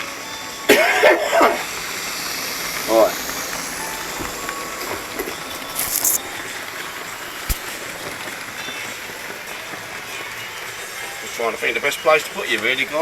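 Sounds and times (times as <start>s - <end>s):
model train running on track: 0.0s - 13.0s
sharp click: 7.4s - 7.8s.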